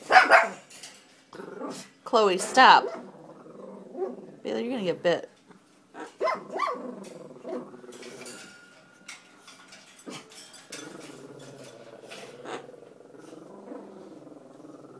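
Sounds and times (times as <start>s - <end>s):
pet growling: 1.3s - 4.5s, 5.9s - 8.5s, 10.0s - 14.9s.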